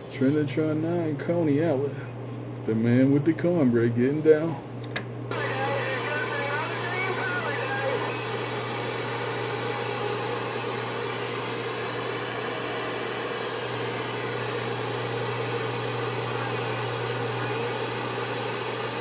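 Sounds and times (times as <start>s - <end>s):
low hum: 5.2s - 19.0s
radio static hiss: 5.3s - 19.0s.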